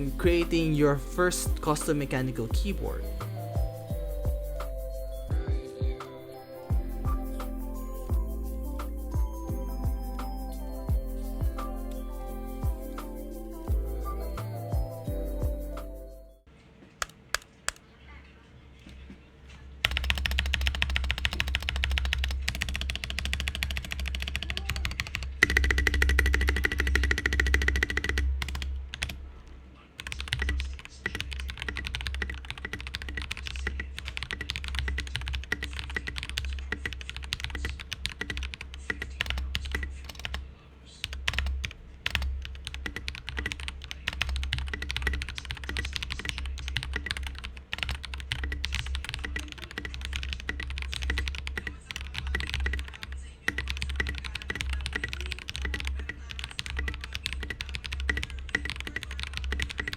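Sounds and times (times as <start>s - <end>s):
mechanical keyboard keystroke clacks: 19.8s - 29.2s, 30.0s - 40.4s, 41.1s - 59.9s.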